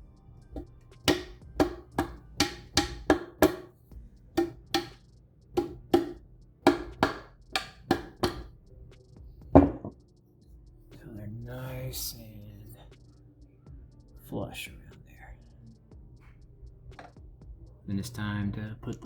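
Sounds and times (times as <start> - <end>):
hammer tapping with ringing tone: 0.6 - 8.6, 9.4 - 10.1.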